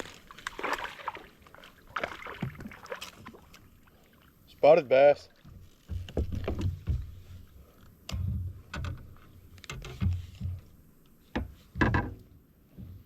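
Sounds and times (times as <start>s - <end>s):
knocks against kayak hull: 5.8s - 7.2s, 11.3s - 12.2s.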